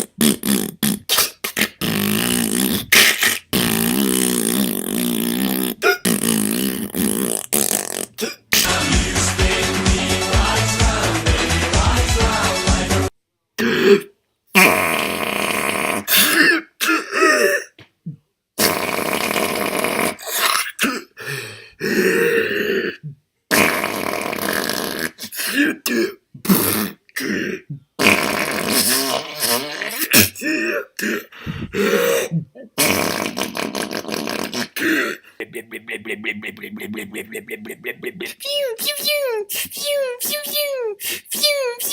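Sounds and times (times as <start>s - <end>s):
person making mouth sound effects: 0.0s - 8.8s, 13.6s - 41.9s
pop music: 8.6s - 13.1s.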